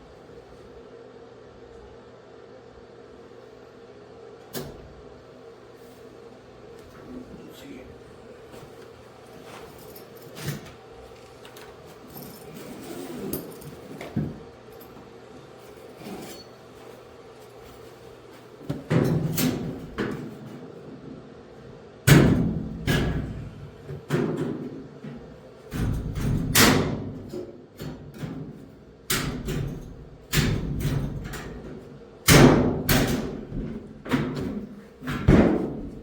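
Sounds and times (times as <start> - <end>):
loud hits on metal cabinet: 22.1 - 23.5, 32.3 - 34.4, 35.0 - 36.0
knocks and clunks of washer cabinet: 32.3 - 36.0.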